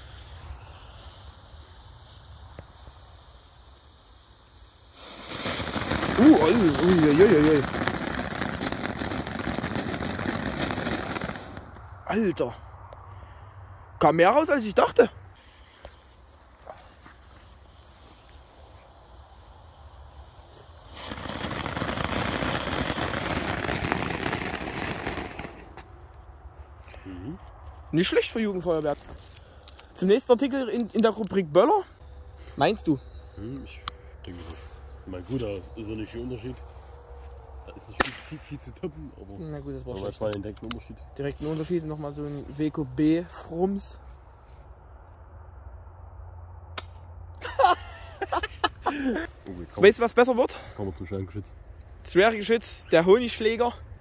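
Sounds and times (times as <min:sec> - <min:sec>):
firework hissing: 0:00.0 - 0:12.1, 0:15.3 - 0:26.2, 0:32.8 - 0:40.3, 0:47.4 - 0:51.2.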